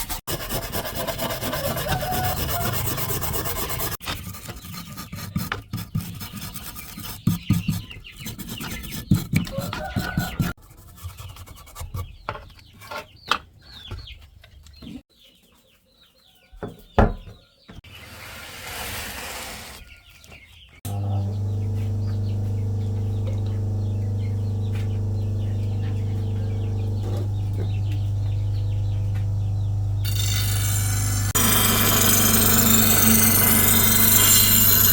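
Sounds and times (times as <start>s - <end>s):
electric motor hum: 20.9s - 34.9s.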